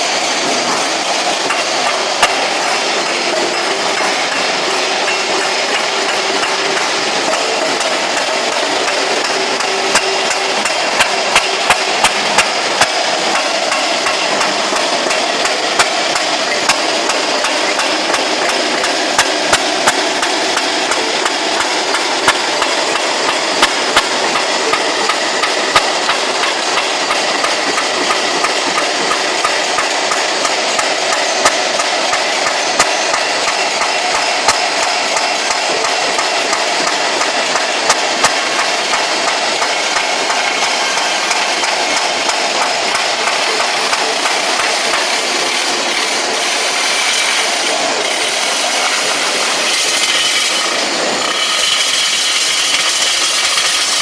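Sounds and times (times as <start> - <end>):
excavator running: 0.0 - 54.0.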